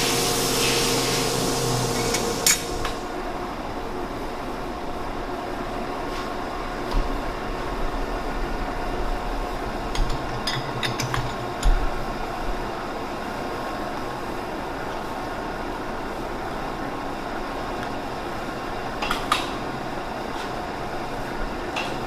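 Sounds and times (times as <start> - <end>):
metal lathe running: 0.0 - 3.1.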